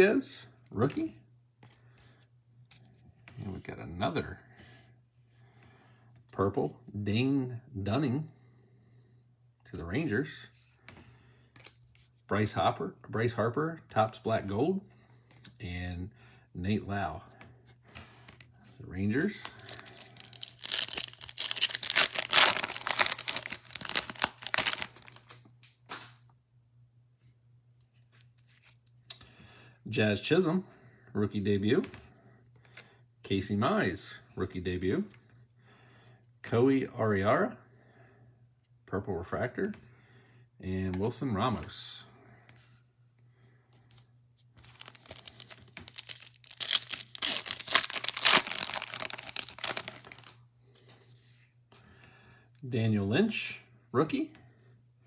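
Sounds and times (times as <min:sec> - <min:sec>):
wrapper tearing and crinkling: 0:19.2 - 0:26.0, 0:44.7 - 0:50.4.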